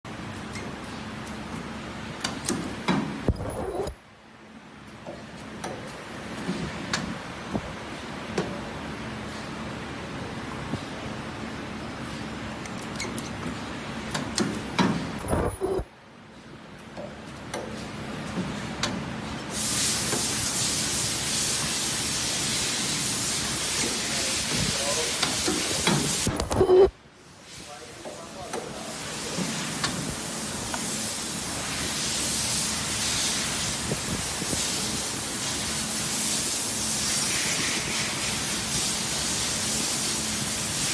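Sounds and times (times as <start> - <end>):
loud hiss of air: 19.4 - 26.4, 27.2 - 40.9.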